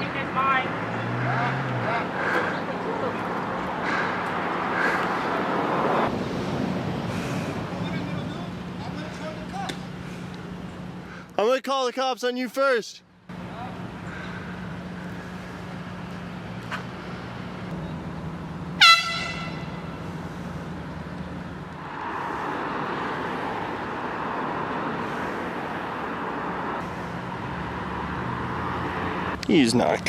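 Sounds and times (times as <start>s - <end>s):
air horn blast: 18.8s - 20.0s.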